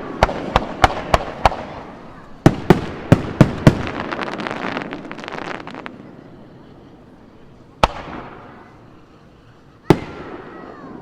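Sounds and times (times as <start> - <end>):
firework crackles: 0.0 - 11.0
fireworks banging: 0.0 - 11.0.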